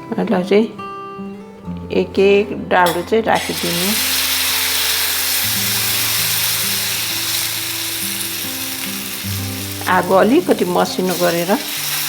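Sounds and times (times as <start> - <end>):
background music held notes: 0.0 - 12.0
batter sizzling in oil: 3.4 - 12.0.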